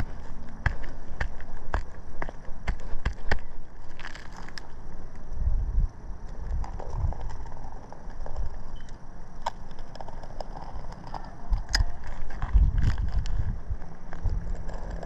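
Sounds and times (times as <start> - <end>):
low uneven rumbling: 0.0 - 15.0
light scraping: 9.7 - 15.0.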